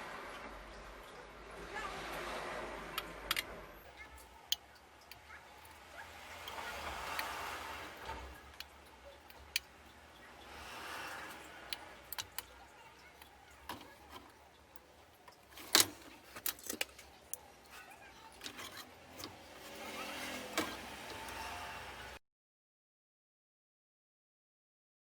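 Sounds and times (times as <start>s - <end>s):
tools clicking and tapping: 3.3s - 21.6s.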